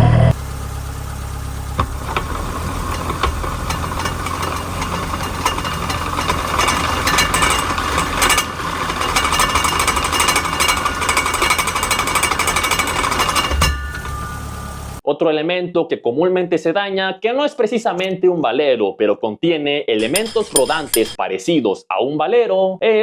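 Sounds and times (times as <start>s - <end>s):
gear whine: 0.0s - 15.0s
rattling gear clatter: 1.8s - 15.0s, 20.0s - 21.2s.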